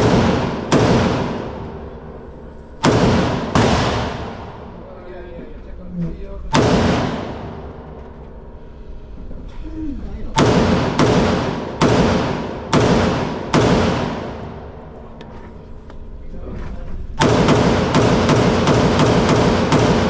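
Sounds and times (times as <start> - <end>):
echoing gunshots indoors: 0.0 - 4.9, 6.4 - 9.3, 10.2 - 15.2, 17.1 - 20.0.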